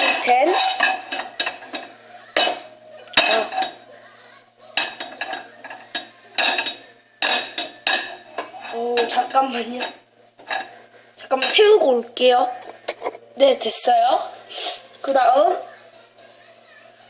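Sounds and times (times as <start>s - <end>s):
metal utensils clanking: 0.0s - 3.8s, 4.8s - 13.2s.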